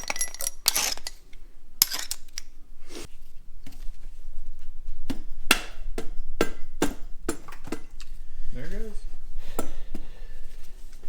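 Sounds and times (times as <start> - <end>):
metal tools clanking together: 0.0 - 2.6.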